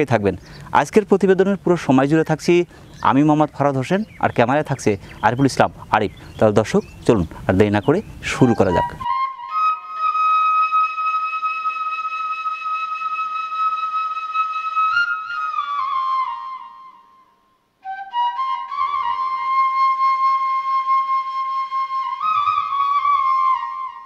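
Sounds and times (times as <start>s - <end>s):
solo flute melody: 8.3s - 24.0s.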